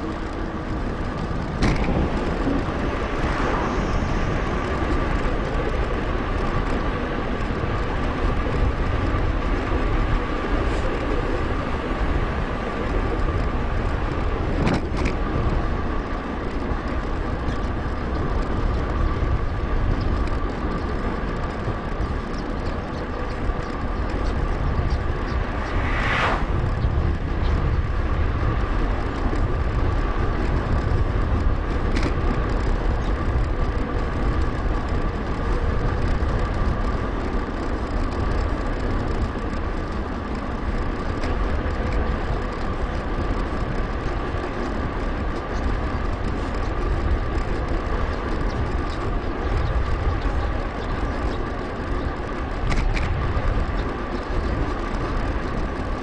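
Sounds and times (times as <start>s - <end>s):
steady high whine: 0.0s - 30.3s
mountain bike rolling: 0.0s - 56.0s
wind buffeting microphone: 0.0s - 56.0s.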